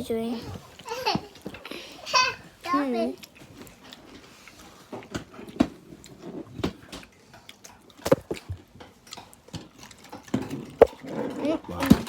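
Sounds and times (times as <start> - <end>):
food handling at table: 8.0 - 11.4.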